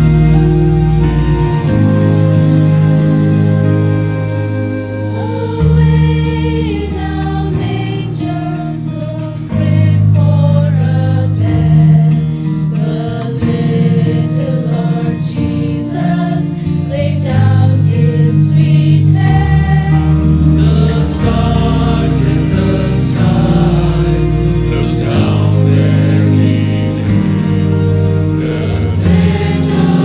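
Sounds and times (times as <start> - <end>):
choir singing: 0.0 - 30.0
instrumental accompaniment: 0.0 - 30.0.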